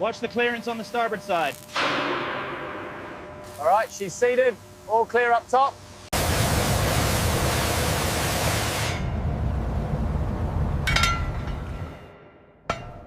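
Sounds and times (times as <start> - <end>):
loud even hiss: 0.4 - 9.2
ringing metallic clink: 10.9 - 13.0.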